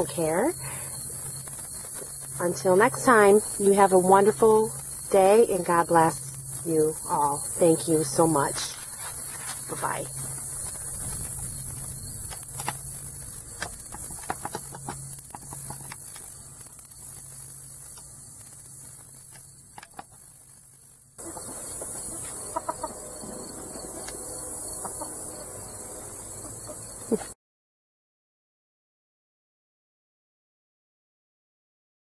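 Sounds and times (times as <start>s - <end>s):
steady background hiss: 0.0s - 27.2s
chickens clucking: 14.1s - 15.7s, 21.2s - 27.3s.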